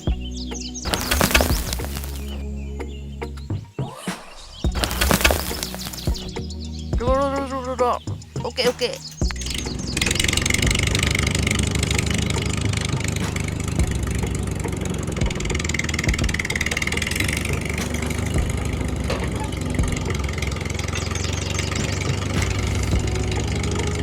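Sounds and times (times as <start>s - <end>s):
engine idling: 4.7s - 7.3s, 9.2s - 24.0s.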